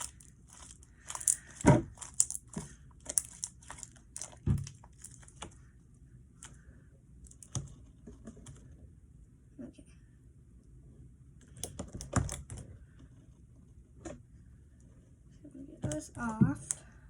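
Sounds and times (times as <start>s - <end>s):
crinkling: 0.0s - 8.8s.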